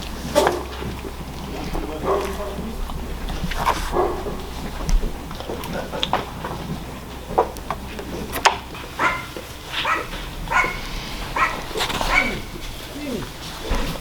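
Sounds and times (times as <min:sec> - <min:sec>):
dog barking and yipping: 0:02.0 - 0:02.6, 0:03.9 - 0:04.4, 0:09.0 - 0:12.7.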